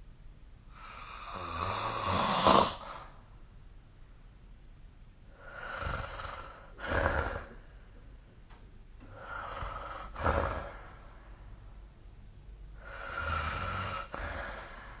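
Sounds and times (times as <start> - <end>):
person snoring: 0.7 - 3.1, 5.4 - 7.6, 9.1 - 11.0, 12.8 - 15.0.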